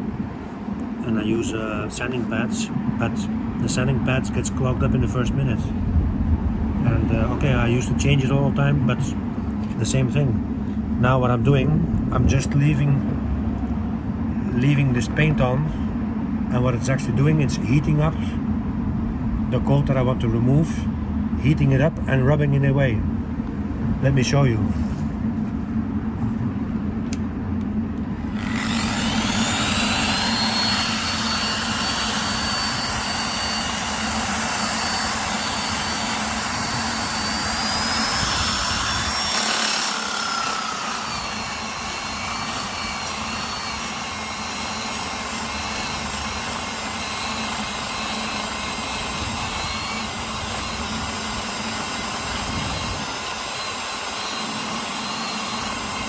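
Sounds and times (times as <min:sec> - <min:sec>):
steady low hum: 0:00.0 - 0:56.0
disc grinder whining: 0:28.2 - 0:56.0.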